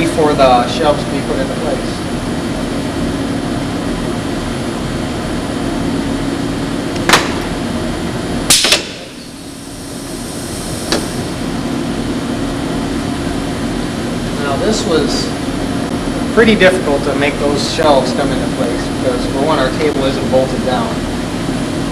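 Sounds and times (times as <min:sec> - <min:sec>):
machine hum: 0:00.0 - 0:21.9.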